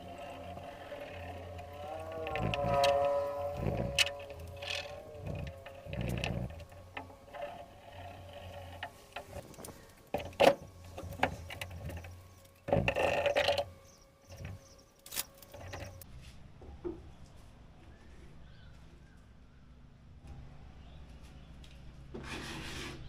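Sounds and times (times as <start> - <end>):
scraping or rustling: 0.0 - 16.4, 22.2 - 23.0
faint steady hum: 0.0 - 22.2.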